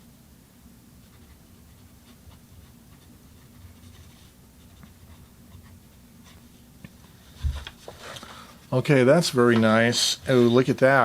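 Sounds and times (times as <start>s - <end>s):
pen nib scratching on paper: 1.0s - 6.4s.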